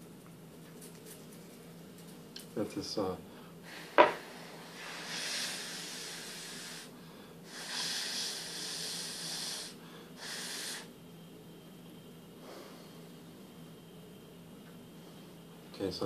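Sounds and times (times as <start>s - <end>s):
air blowing hiss: 3.6s - 10.9s.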